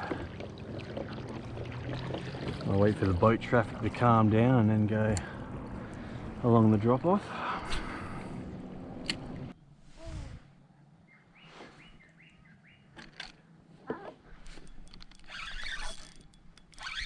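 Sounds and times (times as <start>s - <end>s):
birds calling: 10.8s - 14.2s.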